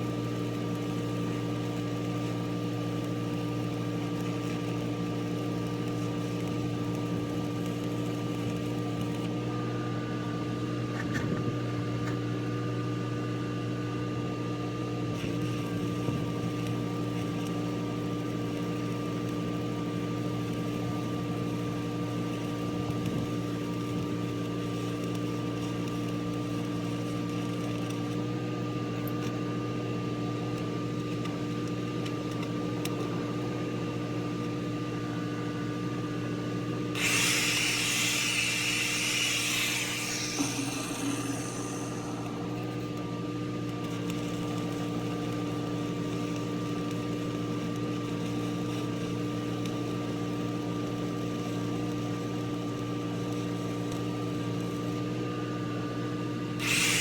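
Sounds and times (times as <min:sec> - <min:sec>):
engine-driven welder humming: 0:00.0 - 0:14.0, 0:14.6 - 0:57.0.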